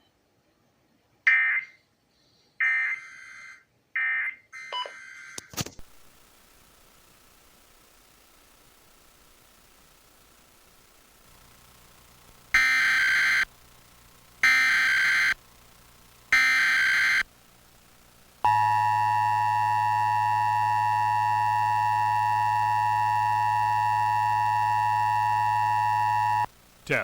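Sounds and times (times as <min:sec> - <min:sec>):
two-tone attention signal: 0:18.5 - 0:26.5
warbling digital data tones: 0:18.5 - 0:27.0.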